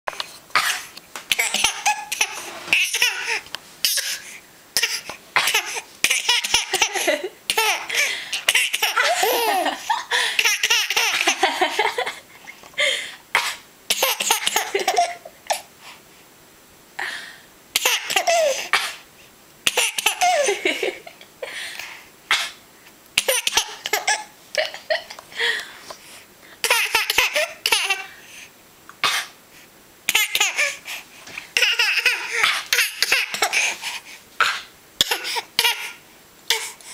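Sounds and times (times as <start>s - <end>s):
baby laughing: 1.3s - 4.2s, 4.8s - 12.2s, 13.9s - 15.6s, 17.8s - 18.7s, 19.7s - 21.1s, 23.2s - 25.1s, 26.6s - 28.1s, 30.1s - 30.8s, 31.6s - 33.7s.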